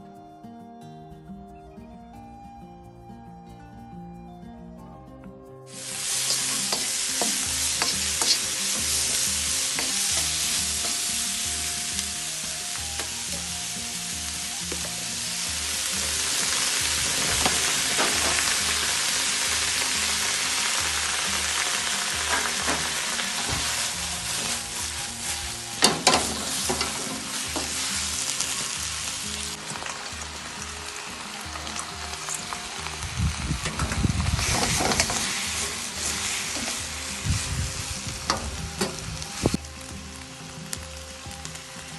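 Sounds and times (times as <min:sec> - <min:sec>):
food sizzling in a pan: 0:05.7 - 0:41.9
spatula scraping a pan: 0:06.1 - 0:11.0.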